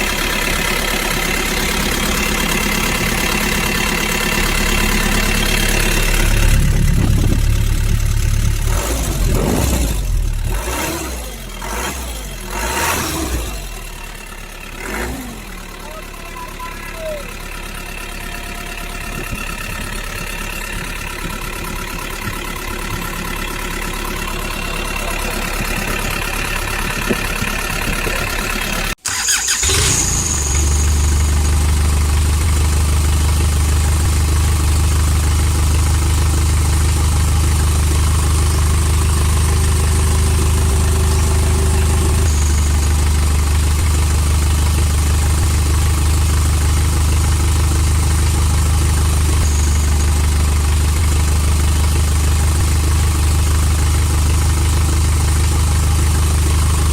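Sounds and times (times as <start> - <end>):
deep hum: 0.0 - 11.8.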